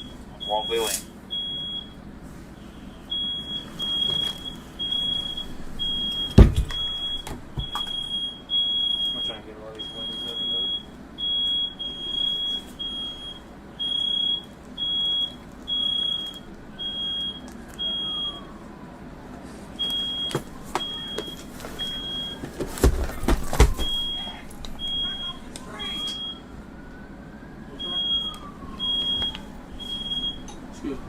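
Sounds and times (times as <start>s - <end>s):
smoke alarm beeping: 0.0s - 2.0s, 2.6s - 18.6s, 19.8s - 26.6s, 27.7s - 30.6s
faint wailing siren: 0.0s - 31.0s.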